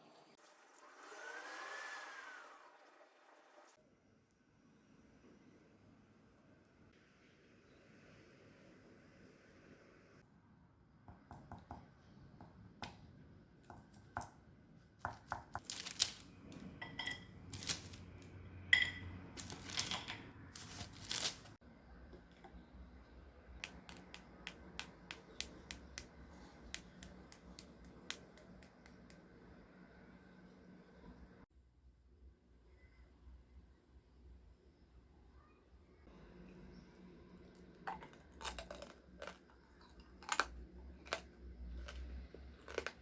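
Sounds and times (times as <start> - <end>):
kitchen clicks and knocks: 16.6 - 17.9, 18.8 - 20.3.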